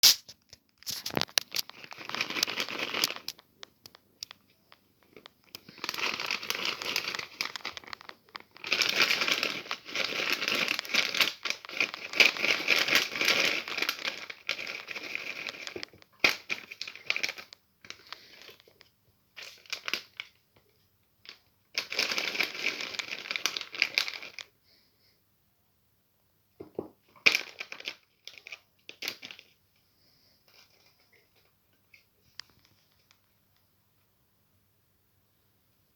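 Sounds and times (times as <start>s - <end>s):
plastic packet crinkling: 0.0s - 20.4s, 21.2s - 24.5s, 26.7s - 29.6s.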